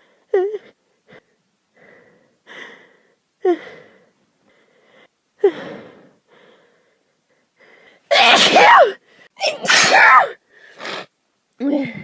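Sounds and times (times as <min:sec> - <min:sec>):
woman gasping and breathing hard: 0:00.0 - 0:09.6
woman sneezing: 0:08.1 - 0:11.1.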